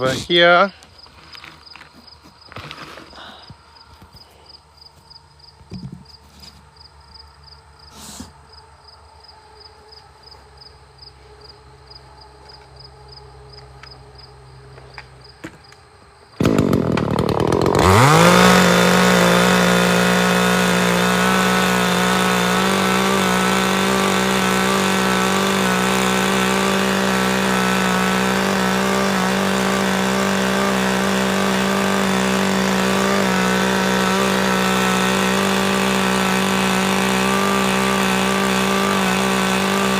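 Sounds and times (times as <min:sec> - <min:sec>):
chainsaw revving: 0:16.4 - 0:39.9.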